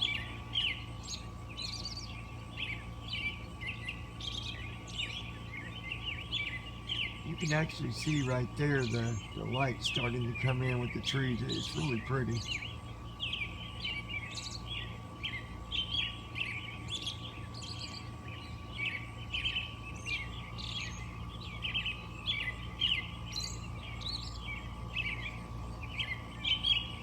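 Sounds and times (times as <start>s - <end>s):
birds chirping and singing: 0.0s - 27.0s
faint steady hum: 0.0s - 27.0s.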